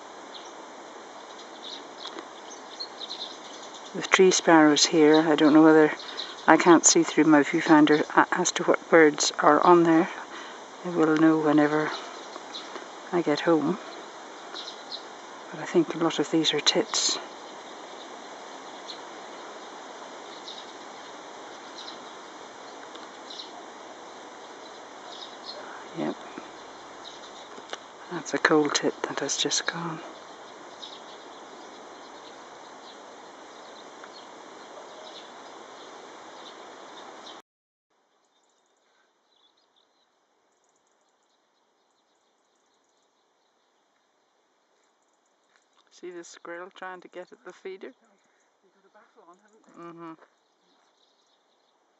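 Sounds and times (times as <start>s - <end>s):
outdoor background hiss: 0.0s - 51.9s
faint bird chirps: 1.2s - 7.0s, 10.3s - 23.7s, 24.4s - 37.4s.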